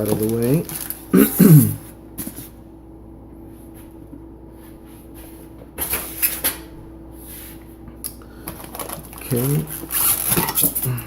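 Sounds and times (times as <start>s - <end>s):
knocks and rustles of packaging: 0.0s - 1.0s
faint steady hum: 0.0s - 11.0s.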